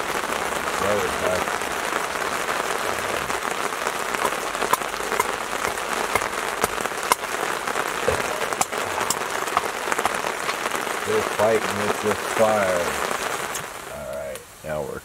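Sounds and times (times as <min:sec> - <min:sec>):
heavy rain falling: 0:00.0 - 0:15.0
sharp drip ticks: 0:04.1 - 0:11.9.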